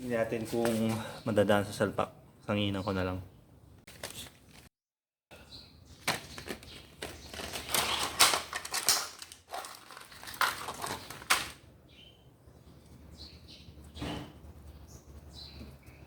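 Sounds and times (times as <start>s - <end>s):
scraping and rattling of tools: 6.4s - 11.6s.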